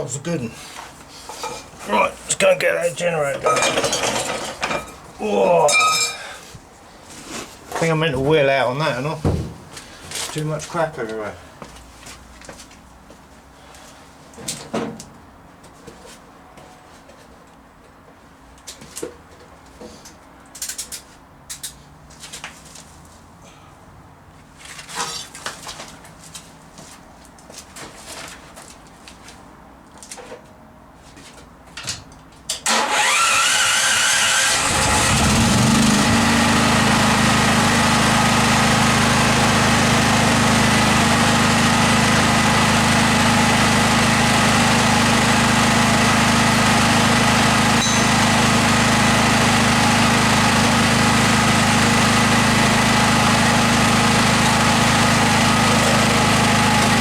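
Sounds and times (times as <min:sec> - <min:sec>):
handling knocks: 0:09.2 - 0:09.8
generator engine running: 0:32.7 - 0:57.0.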